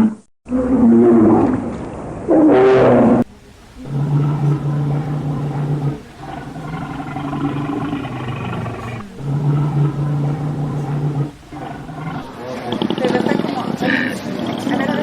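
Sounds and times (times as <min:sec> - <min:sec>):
large animal roaring: 0:00.5 - 0:01.7, 0:02.4 - 0:13.0.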